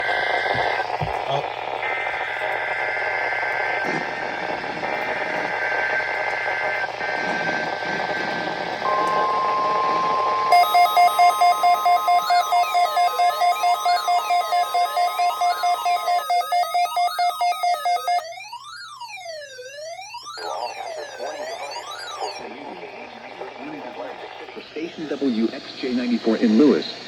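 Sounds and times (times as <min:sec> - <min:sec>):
steady warning alarm tone: 0:00.0 - 0:26.4
two-tone data warble: 0:00.0 - 0:26.4
rapid loud alert beeps: 0:06.8 - 0:22.5
static hiss: 0:22.4 - 0:27.0.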